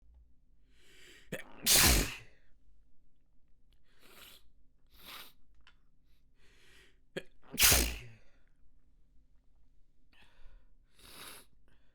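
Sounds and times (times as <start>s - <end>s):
person sneezing: 1.4s - 2.2s, 7.6s - 8.1s.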